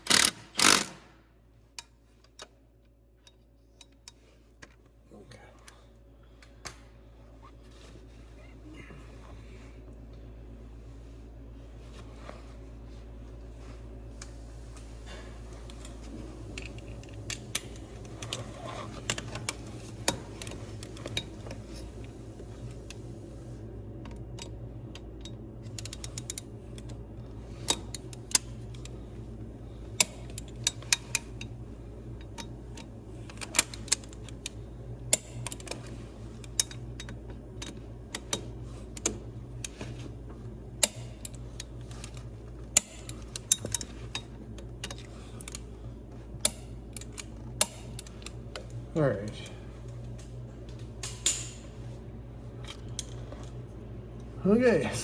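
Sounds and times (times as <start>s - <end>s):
hand tools clicking on metal: 0.0s - 1.0s
steady low hum: 0.0s - 55.0s.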